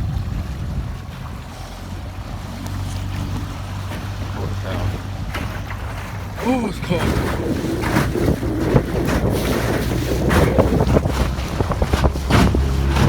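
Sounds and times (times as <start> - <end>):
wind buffeting microphone: 0.0 - 13.0
knocks and rustles: 7.0 - 13.0.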